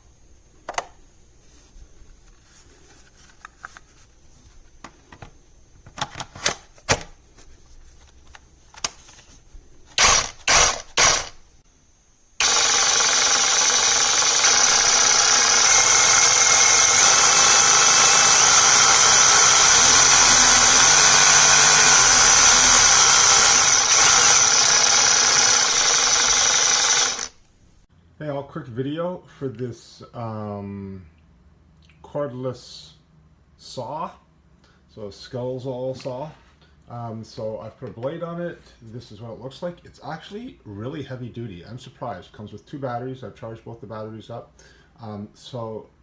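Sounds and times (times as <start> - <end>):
reciprocating saw running: 10.0 - 11.4, 12.4 - 27.4.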